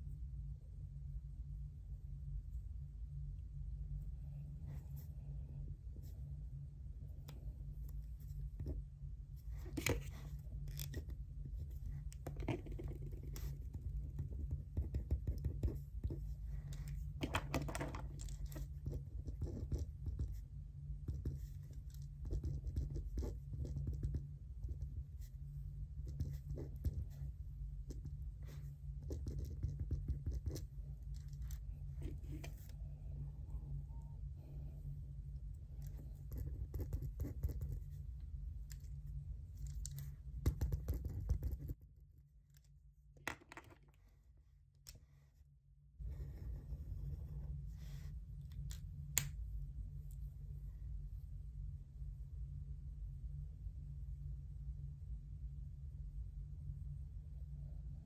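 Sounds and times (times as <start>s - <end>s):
low hum: 0.0s - 58.0s
pen scratching on paper: 9.5s - 16.9s, 18.4s - 20.4s, 21.0s - 25.0s, 26.0s - 27.2s, 27.9s - 30.7s, 35.9s - 37.9s, 40.4s - 41.8s.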